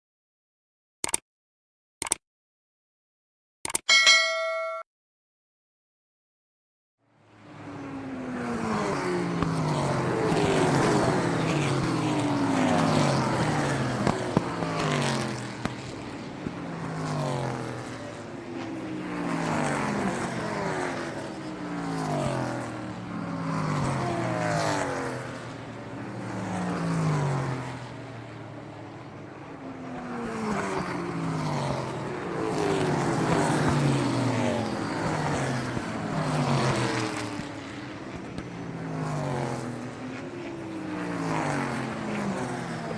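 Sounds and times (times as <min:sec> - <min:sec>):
sharp clicks: 0:01.0 - 0:01.2, 0:02.0 - 0:02.2, 0:03.6 - 0:03.9
cars passing by: 0:07.1 - 0:42.9.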